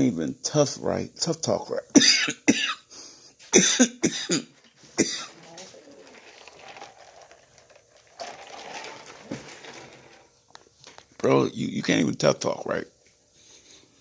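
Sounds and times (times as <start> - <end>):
man coughing: 2.0 - 2.9, 3.5 - 5.4
breathing: 2.9 - 3.4, 13.3 - 14.0.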